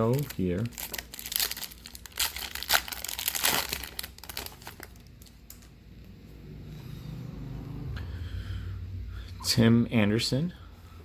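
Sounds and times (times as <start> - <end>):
foil wrapper crinkling and tearing: 0.0 - 5.7.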